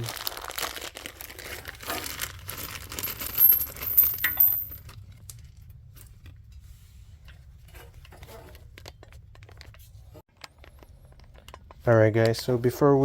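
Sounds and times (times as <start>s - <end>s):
metal studs clinking in hand: 3.0s - 4.8s.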